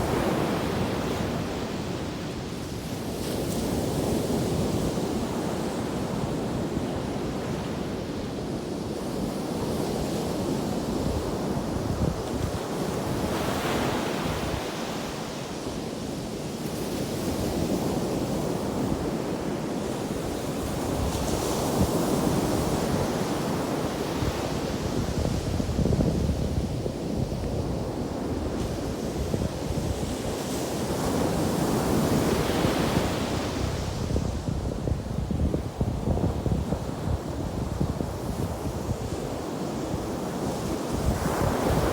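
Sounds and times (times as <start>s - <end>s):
wind buffeting microphone: 24.0s - 41.9s.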